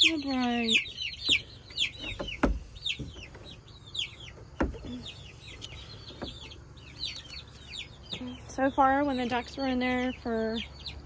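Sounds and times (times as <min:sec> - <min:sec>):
chicks peeping: 0:00.0 - 0:11.0
knocks: 0:02.0 - 0:03.3.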